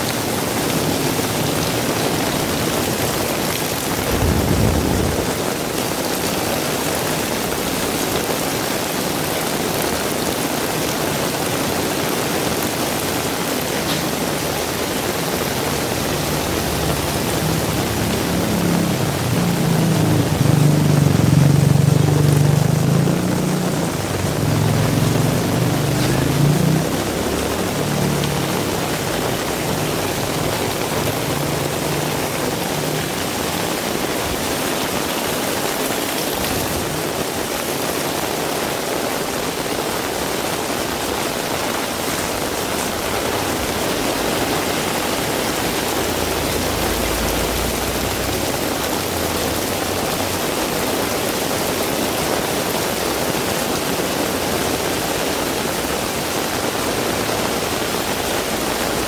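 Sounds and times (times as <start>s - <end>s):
heavy rain pouring: 0.0s - 59.0s
low rumble: 3.9s - 5.6s.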